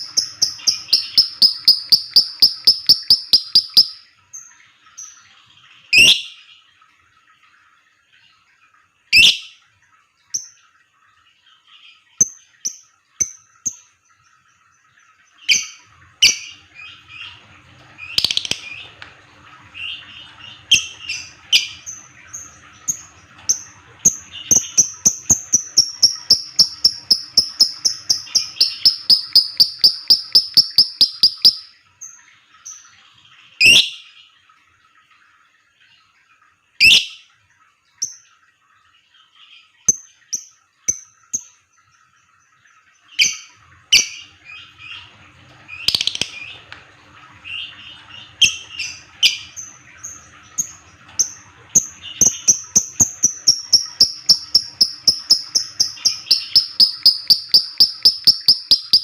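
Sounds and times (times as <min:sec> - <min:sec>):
lovebird chirping: 0:00.0 - 0:04.1, 0:18.0 - 0:18.8, 0:24.4 - 0:31.7, 0:45.8 - 0:46.5, 0:52.2 - 0:59.0.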